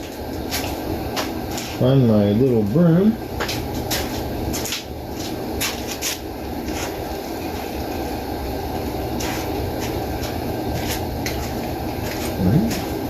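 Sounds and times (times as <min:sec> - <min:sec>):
workshop machinery running: 0:00.0 - 0:13.0.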